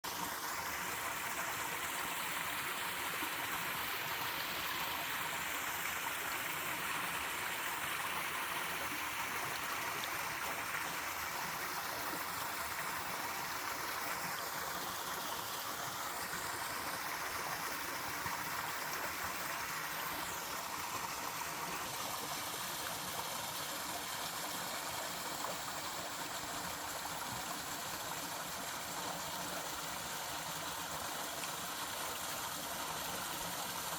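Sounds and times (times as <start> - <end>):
small waterfall rushing: 0.0 - 33.9.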